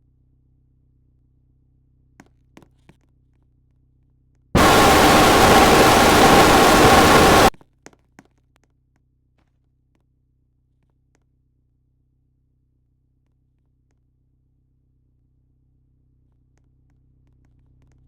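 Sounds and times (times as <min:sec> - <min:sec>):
loud static hiss: 0:04.6 - 0:07.6.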